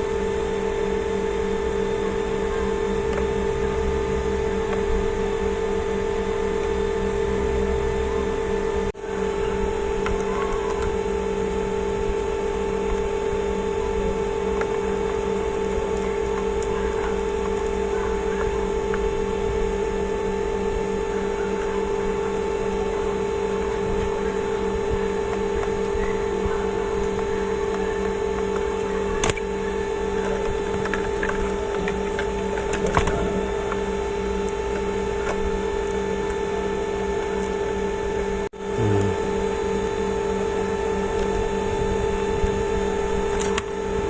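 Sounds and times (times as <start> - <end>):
electrical hum: 0.0 - 25.3, 38.6 - 44.0.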